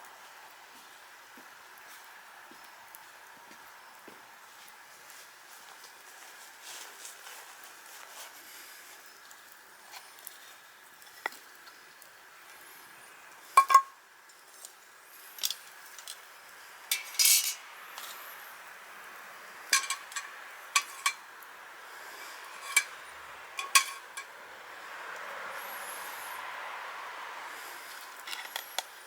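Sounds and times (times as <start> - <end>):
scraping rattle: 16.9 - 17.6, 19.8 - 21.2, 22.2 - 23.0, 23.6 - 24.3
utensils clinking on dishes: 16.9 - 17.7, 19.7 - 21.3, 22.2 - 23.0, 23.6 - 24.3.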